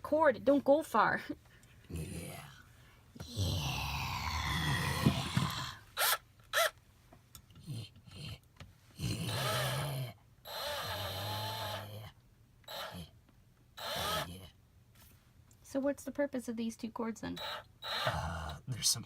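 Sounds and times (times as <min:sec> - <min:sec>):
person gasping and groaning: 0:01.9 - 0:02.6, 0:03.2 - 0:05.9, 0:18.0 - 0:18.7.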